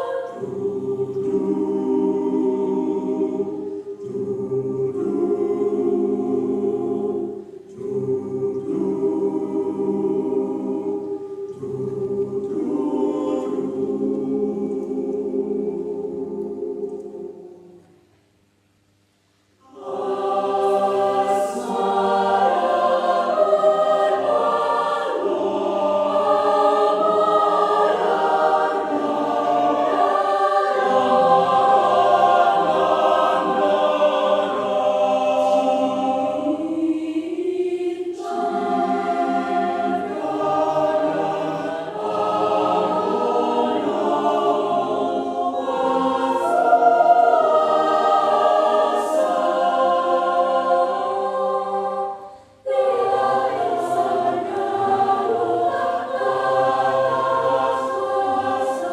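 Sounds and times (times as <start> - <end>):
choir singing in parts: 0.0 - 18.1, 19.6 - 58.9.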